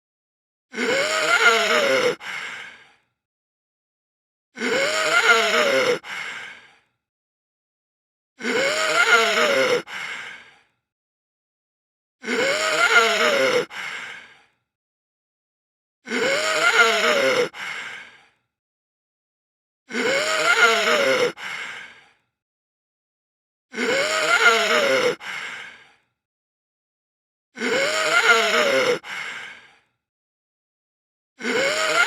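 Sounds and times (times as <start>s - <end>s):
heavy breathing: 0.9s - 3.1s, 5.9s - 7.0s, 9.9s - 10.8s, 13.7s - 14.6s, 17.4s - 18.5s, 21.3s - 22.3s, 25.1s - 26.1s, 29.0s - 30.0s.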